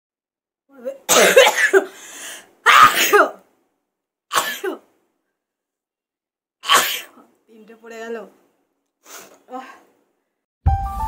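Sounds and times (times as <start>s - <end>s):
woman sneezing: 1.1s - 2.0s, 2.7s - 3.4s, 6.6s - 7.2s.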